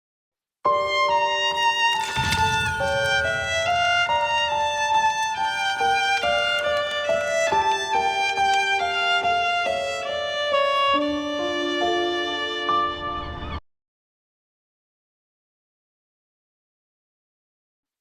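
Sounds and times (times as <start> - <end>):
violin-led musical jingle: 0.8 - 13.6.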